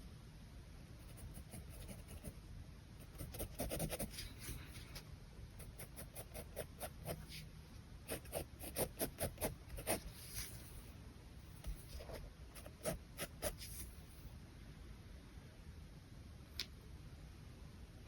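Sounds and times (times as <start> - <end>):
pen scratching on paper: 1.1 - 2.3, 3.0 - 4.6, 5.6 - 7.4, 8.1 - 10.7, 11.6 - 13.9.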